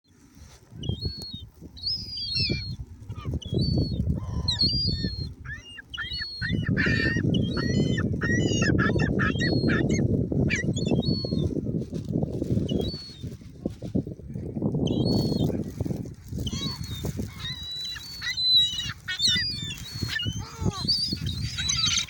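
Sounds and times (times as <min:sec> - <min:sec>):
seagulls calling: 0:00.8 - 0:11.5, 0:12.7 - 0:13.2, 0:14.9 - 0:15.6, 0:16.4 - 0:22.0.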